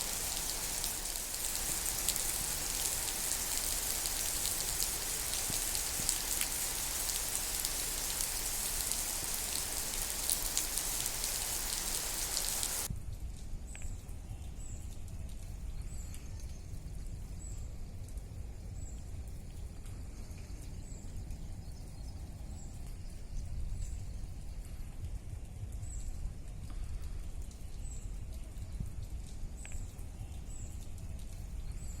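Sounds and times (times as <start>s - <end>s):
heavy rain hiss: 0.0s - 12.9s.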